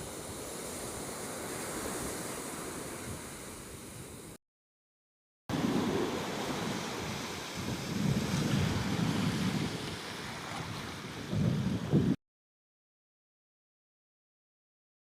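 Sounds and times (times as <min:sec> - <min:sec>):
surf hissing: 0:00.0 - 0:04.4, 0:05.5 - 0:12.1
wind blowing on microphone: 0:00.0 - 0:04.4, 0:05.5 - 0:12.2.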